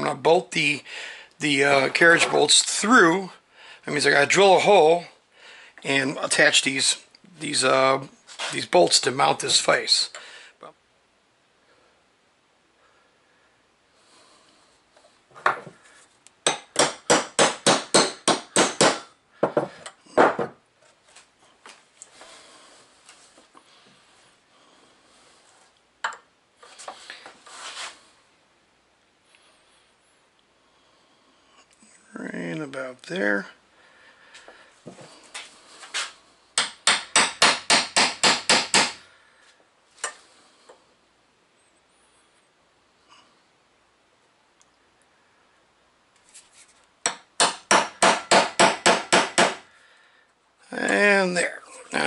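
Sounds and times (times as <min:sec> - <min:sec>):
hammer tapping: 0:16.4 - 0:20.6, 0:36.6 - 0:39.0, 0:47.0 - 0:49.6.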